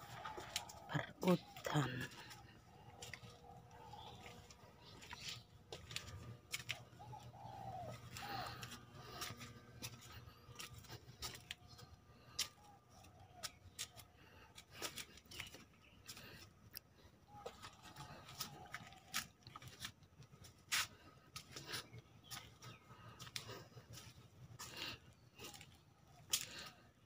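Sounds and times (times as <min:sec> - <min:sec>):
dove cooing: 0:06.6 - 0:09.4.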